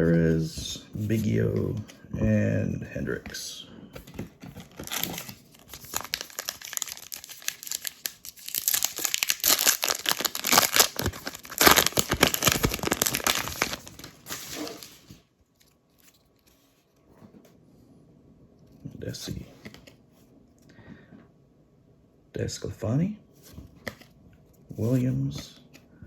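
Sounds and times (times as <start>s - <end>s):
wrapper tearing and crinkling: 4.6s - 15.2s.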